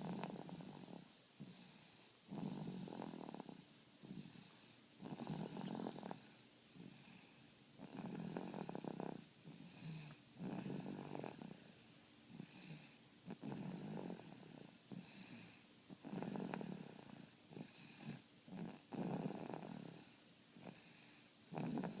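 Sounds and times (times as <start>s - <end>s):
soft breaths: 0.0s - 22.0s
person snoring: 2.3s - 4.4s, 5.0s - 6.3s, 7.8s - 11.6s, 12.3s - 22.0s.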